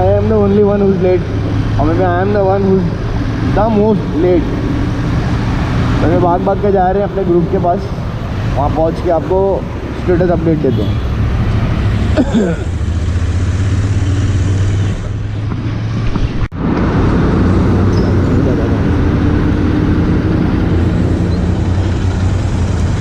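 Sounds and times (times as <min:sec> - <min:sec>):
motorcycle engine running: 0:09.7 - 0:16.5, 0:17.4 - 0:23.0
wind rushing: 0:15.7 - 0:22.6.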